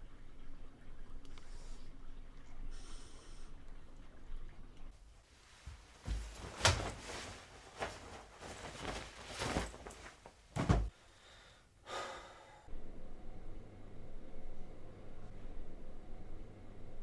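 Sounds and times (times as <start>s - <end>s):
knocks and thumps indoors: 5.7s - 11.0s.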